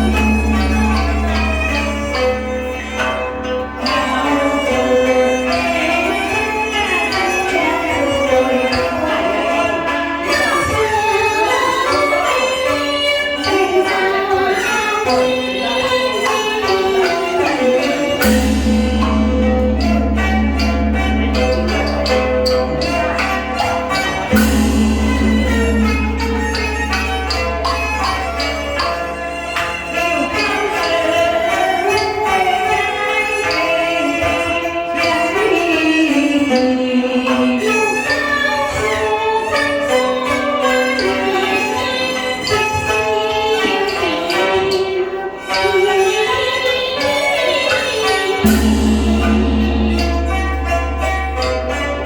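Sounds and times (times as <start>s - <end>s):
steady low tone: 0.0s - 3.5s, 18.3s - 23.6s, 24.3s - 28.7s, 48.4s - 52.0s
sharp percussion strikes: 0.0s - 52.0s
traditional opera ensemble: 0.0s - 52.0s.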